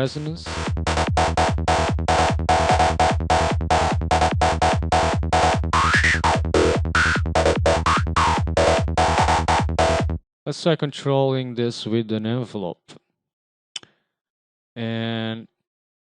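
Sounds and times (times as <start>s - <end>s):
synth lead chopped notes: 0.4s - 10.2s
low thump on each beat: 0.5s - 10.2s.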